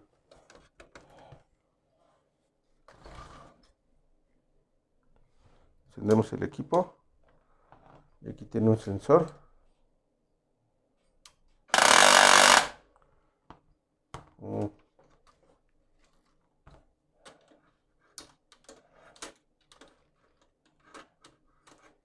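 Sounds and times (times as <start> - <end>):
laser printer harsh cracking: 11.8 - 12.8.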